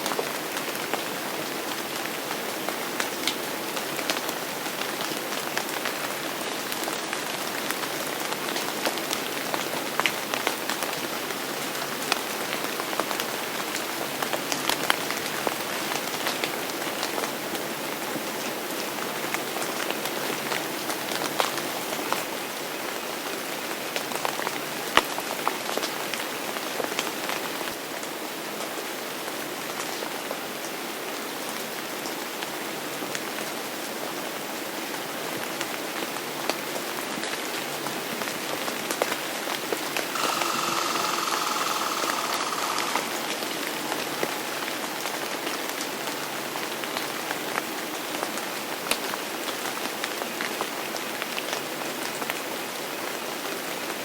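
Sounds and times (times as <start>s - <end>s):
steady rain falling: 0.0s - 53.8s
steady high tone: 40.1s - 43.5s.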